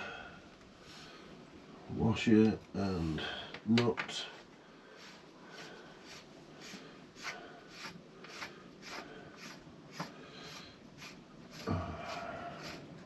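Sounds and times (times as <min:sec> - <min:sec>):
axle nut rasping strokes: 0:04.9 - 0:13.0.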